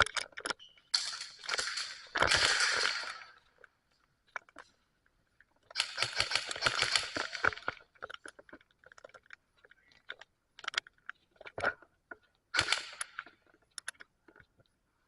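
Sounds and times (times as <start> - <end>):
clicks and knocks: 0.0 - 4.8
airsoft guns firing bursts: 5.8 - 7.4, 12.6 - 13.0.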